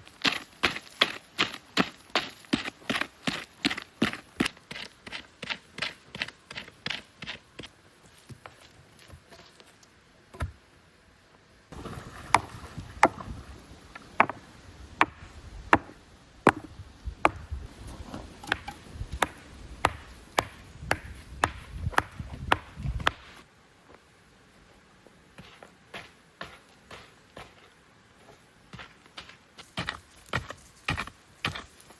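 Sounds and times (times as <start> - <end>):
wood being chopped: 10.3 - 10.6, 11.8 - 23.4.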